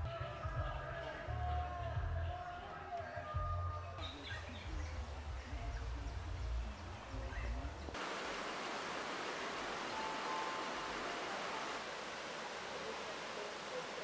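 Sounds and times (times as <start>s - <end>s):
flowing river water: 4.1s - 14.0s.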